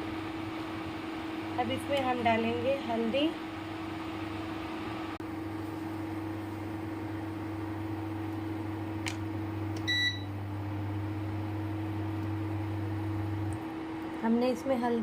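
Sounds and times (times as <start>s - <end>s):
kitchen appliance humming: 0.0s - 15.0s
short electronic beep: 9.9s - 10.3s.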